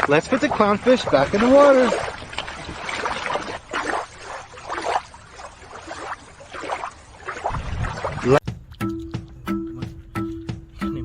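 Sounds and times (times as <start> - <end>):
shallow water splashing: 0.0 - 8.5.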